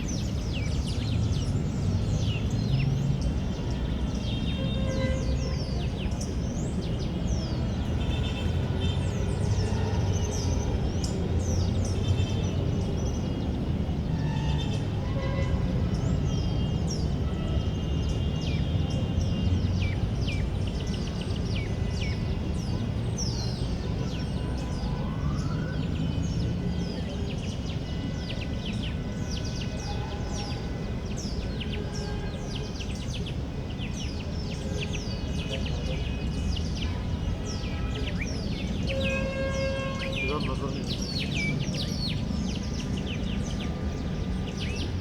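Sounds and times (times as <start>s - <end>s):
small birds chirping: 15.9s - 45.0s.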